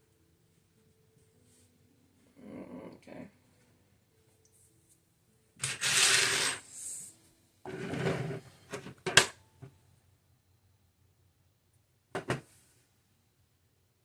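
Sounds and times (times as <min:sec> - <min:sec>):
scraping rubs on a table: 0:05.6 - 0:06.6, 0:07.7 - 0:08.9.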